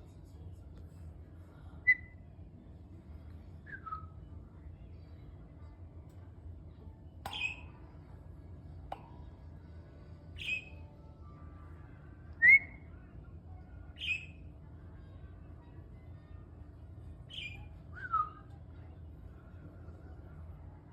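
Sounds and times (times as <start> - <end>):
bird chirping: 7.3 - 7.9, 10.3 - 11.0, 14.0 - 14.4, 17.3 - 18.5.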